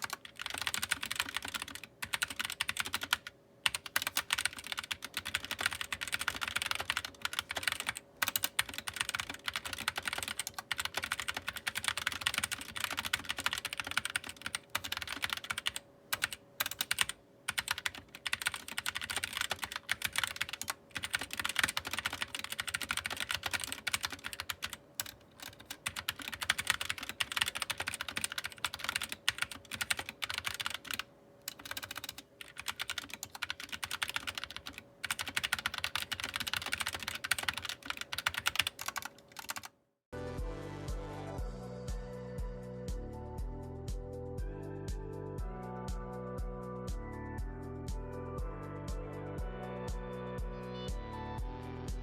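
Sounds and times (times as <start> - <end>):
fast typing on mechanical keyboard: 0.0 - 39.7.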